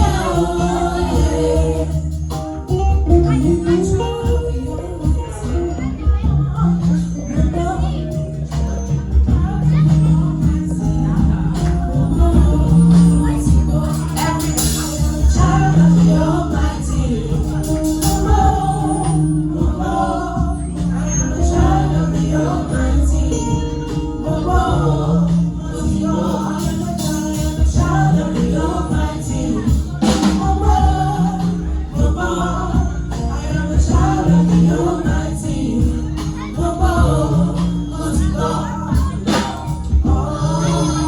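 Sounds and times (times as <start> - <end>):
choir singing gospel: 0.0 - 41.0
keyboard and drums: 0.0 - 41.0
tambourine shaken: 17.3 - 19.4.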